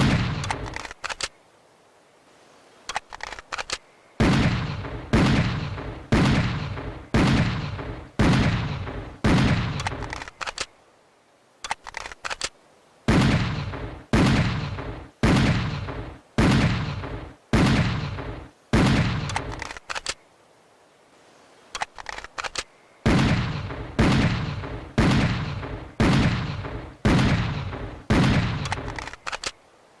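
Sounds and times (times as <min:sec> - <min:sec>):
short clicks: 0:28.6 - 0:29.6.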